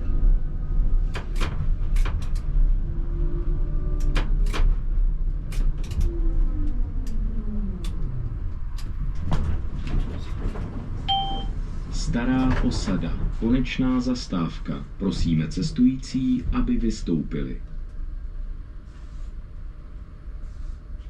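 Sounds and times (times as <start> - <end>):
tram wheels rumbling on rail: 0.0 - 21.0
wheels clicking over rail joints: 7.8 - 11.0.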